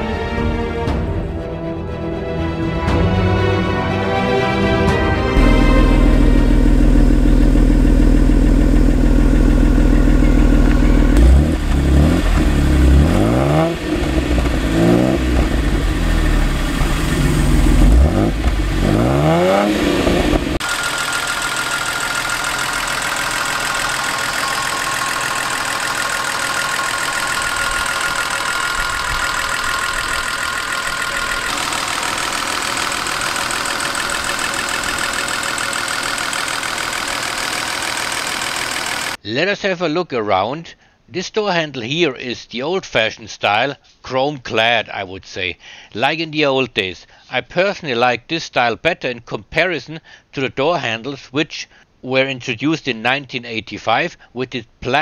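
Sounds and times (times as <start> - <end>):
thin high tone: 5.4 - 11.2, 20.6 - 36.8
car engine idling and revving: 5.4 - 39.2.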